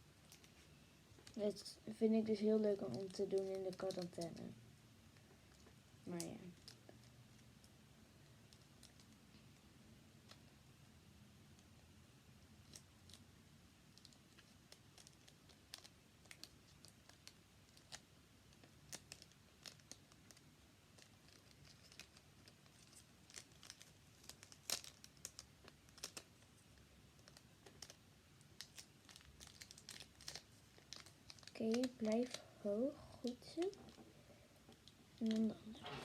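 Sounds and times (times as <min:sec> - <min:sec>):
cardboard and tape crinkling: 0:02.2 - 0:04.5, 0:14.0 - 0:26.6, 0:27.2 - 0:34.1, 0:34.7 - 0:36.0.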